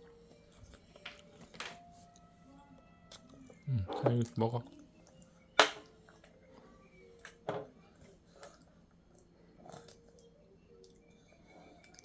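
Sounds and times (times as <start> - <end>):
child eating mouth sounds: 9.5 - 12.0.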